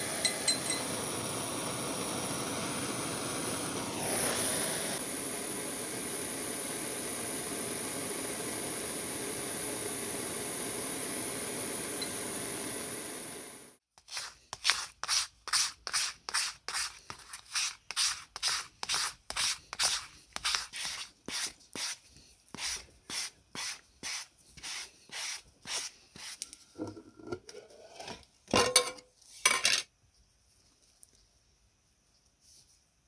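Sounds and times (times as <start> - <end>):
hand rubbing strokes: 14.0 - 26.5.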